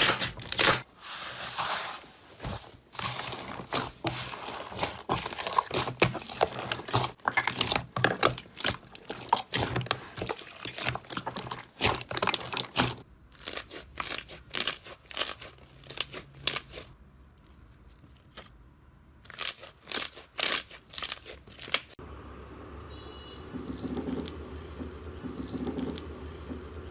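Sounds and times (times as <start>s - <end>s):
slime crackling and popping: 3.0s - 16.9s, 19.2s - 22.0s.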